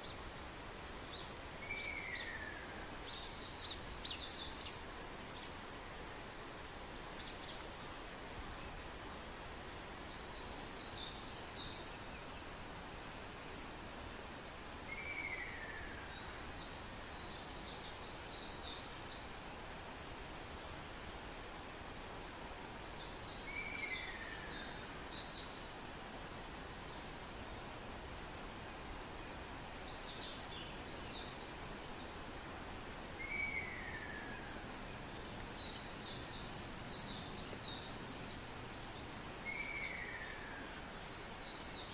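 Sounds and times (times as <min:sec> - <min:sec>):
steady background hiss: 0:00.0 - 0:41.9
small bird chattering song: 0:35.3 - 0:38.5.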